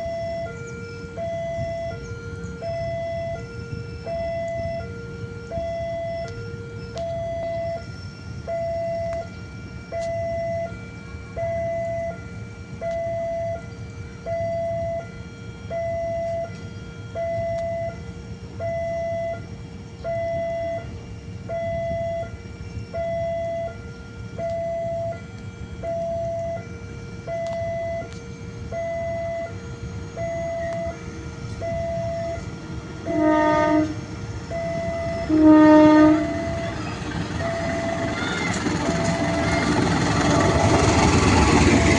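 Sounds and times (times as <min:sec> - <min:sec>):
level crossing two-tone alarm: 0:00.0 - 0:41.9
locomotive horn blasts: 0:21.6 - 0:41.9.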